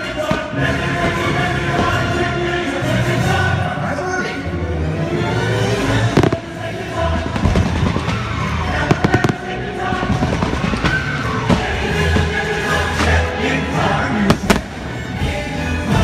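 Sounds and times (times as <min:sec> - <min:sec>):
loud music soundtrack: 0:00.0 - 0:16.0
fireworks bangs: 0:06.2 - 0:12.3, 0:14.3 - 0:14.9.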